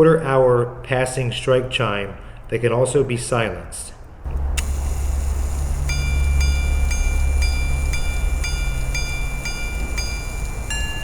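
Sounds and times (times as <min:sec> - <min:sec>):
steady low hum: 0:04.0 - 0:11.0
watch gong strikes: 0:04.3 - 0:11.0.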